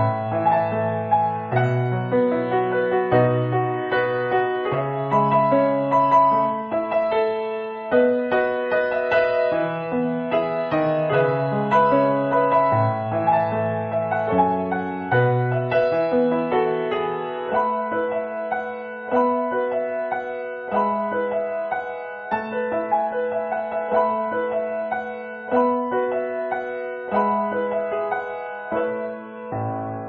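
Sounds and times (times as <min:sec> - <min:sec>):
piano music: 0:00.0 - 0:30.0.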